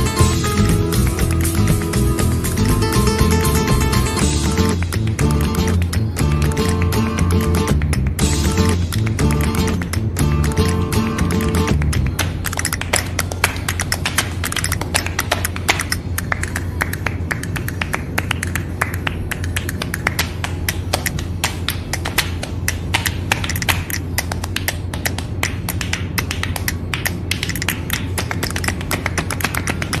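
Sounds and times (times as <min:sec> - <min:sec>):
background music: 0:00.0 - 0:12.3
steady low hum: 0:00.0 - 0:30.0
rapid tapping clicks: 0:11.4 - 0:30.0.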